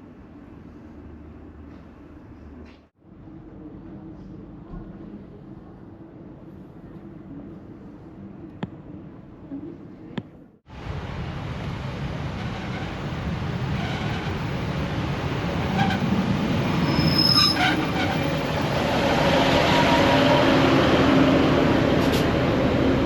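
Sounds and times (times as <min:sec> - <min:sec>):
train running on rails: 0:10.7 - 0:23.0
high squeal: 0:15.6 - 0:18.5.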